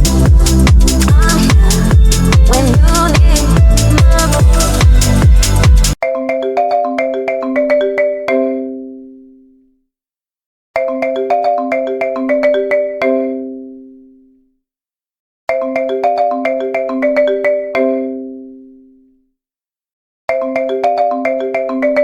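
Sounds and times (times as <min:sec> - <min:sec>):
marimba-like timer alarm: 0:00.0 - 0:09.0, 0:10.8 - 0:13.7, 0:15.5 - 0:18.4, 0:20.3 - 0:22.0.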